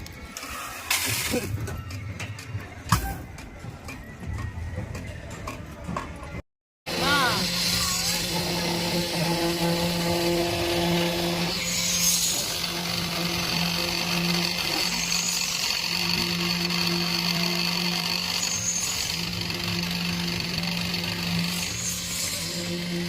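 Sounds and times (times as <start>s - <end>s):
machine motor droning hum: 6.9s - 23.0s.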